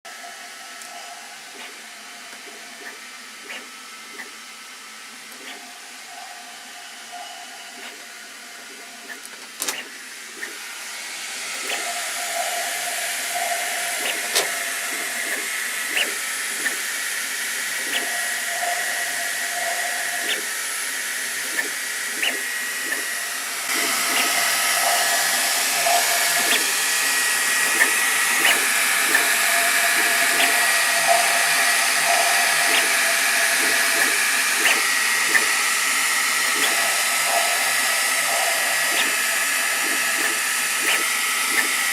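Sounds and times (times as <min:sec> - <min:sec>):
whining tones: 0:00.1 - 0:41.9
printer fan rushing noise: 0:07.7 - 0:41.9
sharp clicks: 0:27.6 - 0:31.4, 0:32.1 - 0:35.6, 0:38.3 - 0:41.9.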